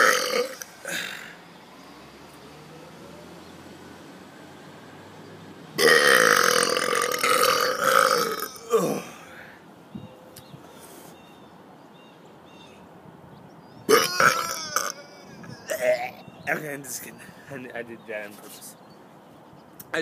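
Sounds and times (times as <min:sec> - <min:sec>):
man burping loudly: 0:00.0 - 0:01.4, 0:05.8 - 0:09.3, 0:13.9 - 0:16.6.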